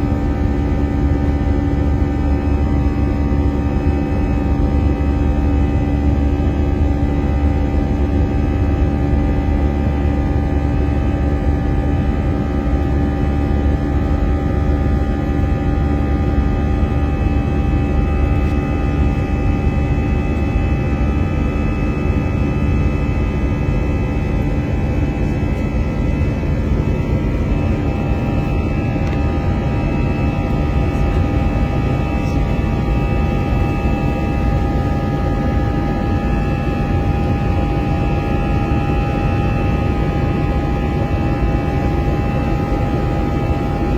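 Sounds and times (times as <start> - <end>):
jet engines heard from cabin: 0.0 - 43.9.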